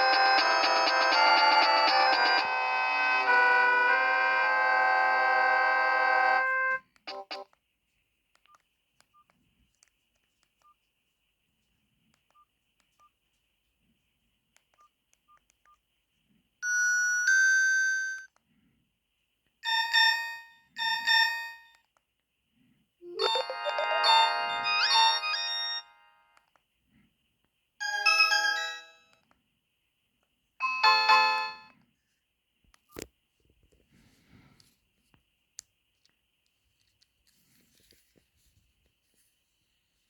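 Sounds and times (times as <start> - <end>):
polyphonic ringtone melody: 0.0 - 3.7, 23.0 - 26.4.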